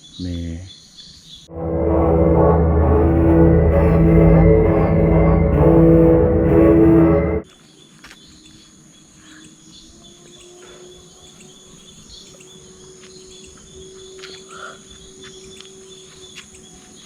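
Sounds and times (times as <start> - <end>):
background music: 1.5 - 7.4.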